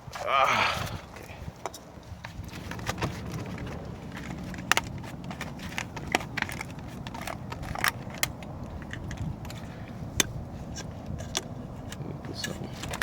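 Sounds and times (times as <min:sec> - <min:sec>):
low rumble: 0:00.6 - 0:12.3
tools and parts clicking: 0:02.7 - 0:13.0.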